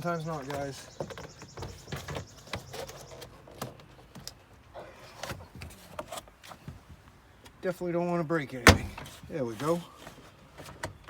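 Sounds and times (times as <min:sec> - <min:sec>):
plastic scraping and creaking: 0:00.0 - 0:06.8.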